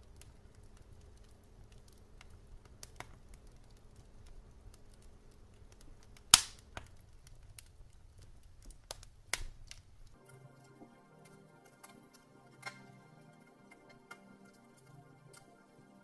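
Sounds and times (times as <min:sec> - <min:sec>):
faint low rumble: 0:00.0 - 0:10.2
wood fire crackling and popping: 0:00.0 - 0:16.0.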